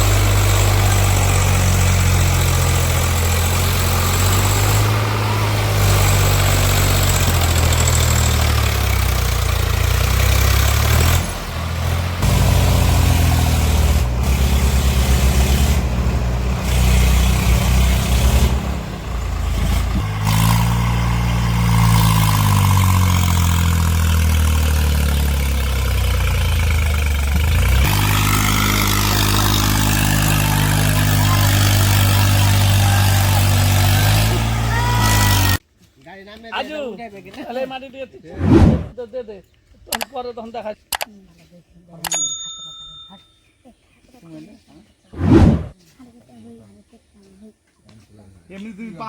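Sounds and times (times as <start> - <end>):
diesel engine revving: 0.0 - 35.6, 38.4 - 39.0, 45.2 - 45.8.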